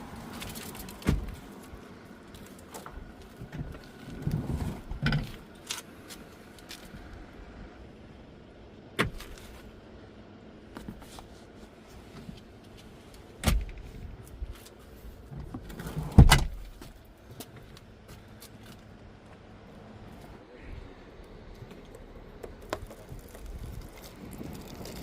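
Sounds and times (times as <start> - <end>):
low steady background noise: 0.0 - 25.0.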